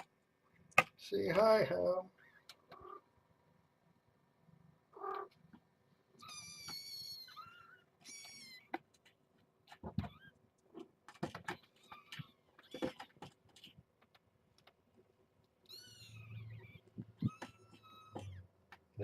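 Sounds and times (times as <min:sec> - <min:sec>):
kitten mewing: 0:04.9 - 0:05.3.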